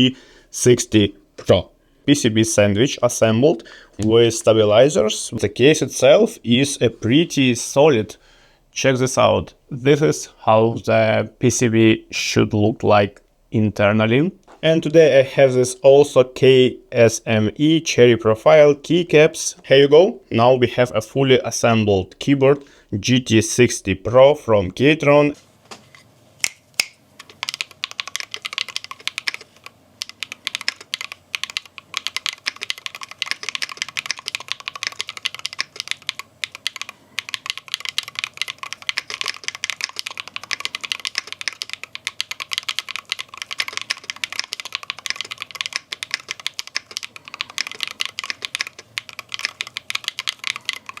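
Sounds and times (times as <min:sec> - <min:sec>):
mechanical keyboard typing: 0:27.2 - 0:51.0.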